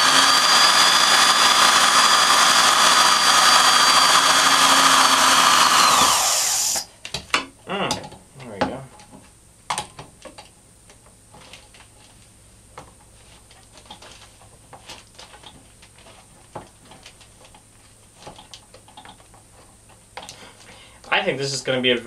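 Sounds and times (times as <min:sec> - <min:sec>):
faint steady background hum: 0:06.8 - 0:22.0.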